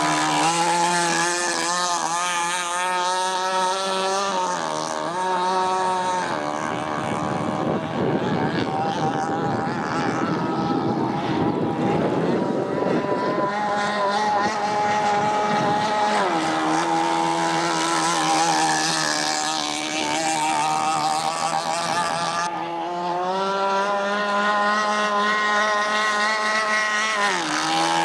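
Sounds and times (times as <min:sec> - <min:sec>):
model boat engine running: 0:00.0 - 0:28.0.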